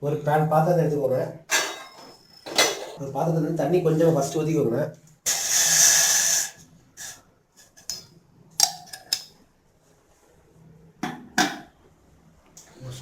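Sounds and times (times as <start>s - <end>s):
utensils clinking and knocking: 1.5s - 3.0s.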